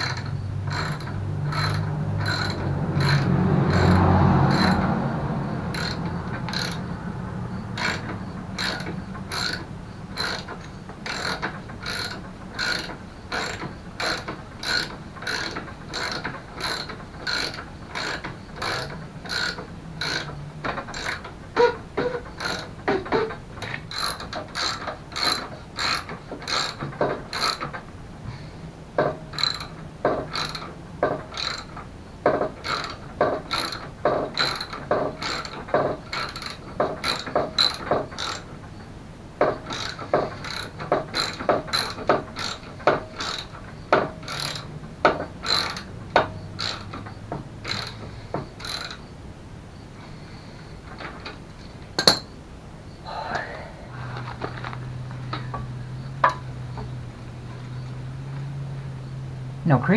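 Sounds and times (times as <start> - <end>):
ratchet wrench clicking: 0.0 - 27.8, 29.0 - 38.5, 39.5 - 49.1.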